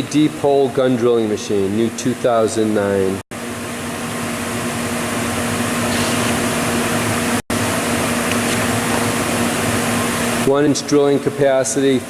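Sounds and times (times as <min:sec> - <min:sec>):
fan-like rushing with hum: 0:03.3 - 0:12.0.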